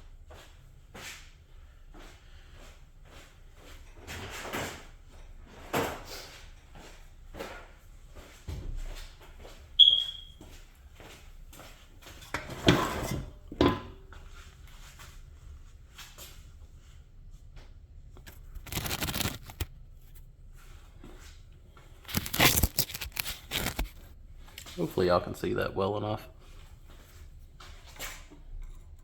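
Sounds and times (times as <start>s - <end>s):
screwdriver prying and scraping: 22.1s - 24.0s.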